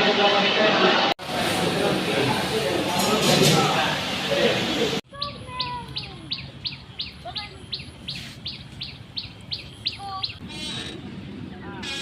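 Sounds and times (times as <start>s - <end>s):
bird chirping: 5.1s - 10.6s.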